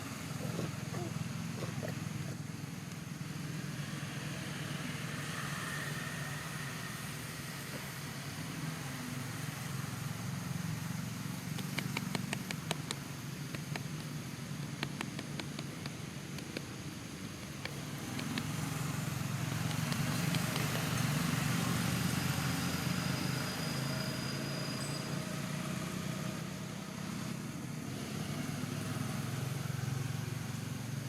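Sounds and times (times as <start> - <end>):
sharp clicks and ticks: 11.5 - 16.8, 17.4 - 18.8, 19.4 - 21.1.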